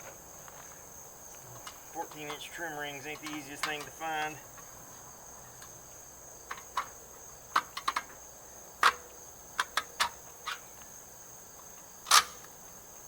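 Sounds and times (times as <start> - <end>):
crickets chirping: 0.0 - 13.0.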